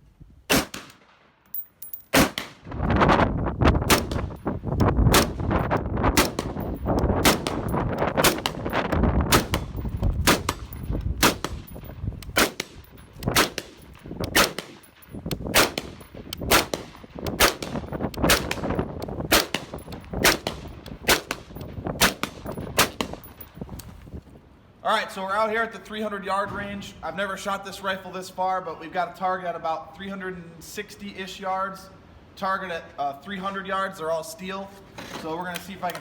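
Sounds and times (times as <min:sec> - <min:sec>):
rifle shots with echo: 0:00.5 - 0:01.2, 0:02.1 - 0:02.7, 0:03.8 - 0:04.4, 0:05.1 - 0:08.7, 0:09.3 - 0:14.9, 0:15.5 - 0:23.4.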